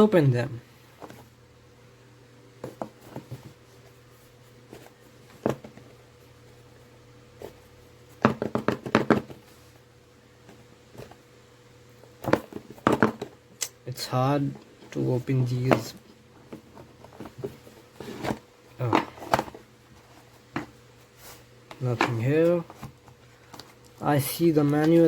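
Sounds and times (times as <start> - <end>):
hands tapping and clicking a box: 8.2 - 9.4
scraping on a box: 16.5 - 21.5.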